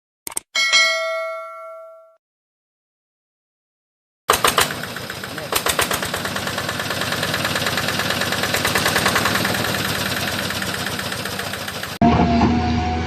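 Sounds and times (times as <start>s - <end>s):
truck engine knocking: 4.3s - 12.0s.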